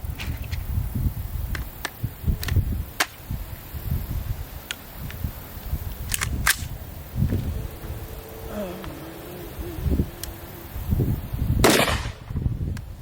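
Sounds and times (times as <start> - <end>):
low rumbling noise: 5.2 - 12.6.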